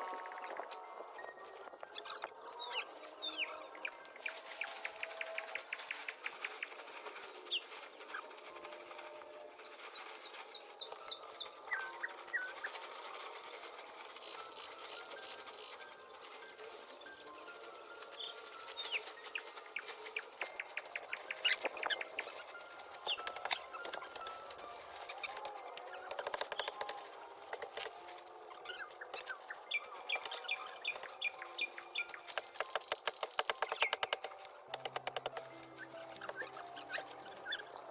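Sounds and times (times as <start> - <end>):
birds chirping: 10.0 - 37.9.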